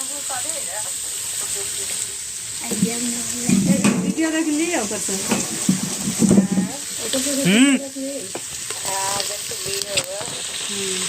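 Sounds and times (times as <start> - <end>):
onions sizzling in oil: 0.0 - 11.0
scraping in a pan: 2.6 - 7.4
person calling out: 7.3 - 8.0.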